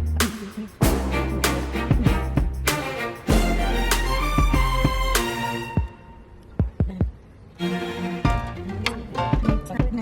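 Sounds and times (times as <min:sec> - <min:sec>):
funky music with bass line: 0:00.0 - 0:05.4.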